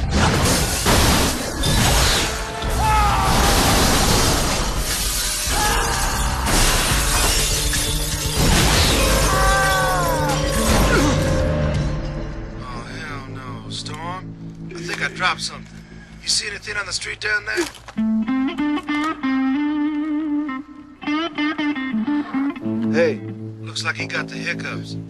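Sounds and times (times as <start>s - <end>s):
dramatic film music: 0.0s - 17.4s
window glass smashing: 0.1s - 11.2s.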